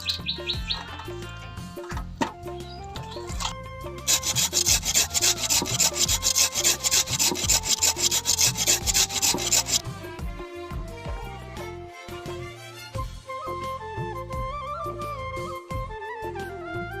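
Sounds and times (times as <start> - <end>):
gourd rasping on a grater: 3.3 - 9.9.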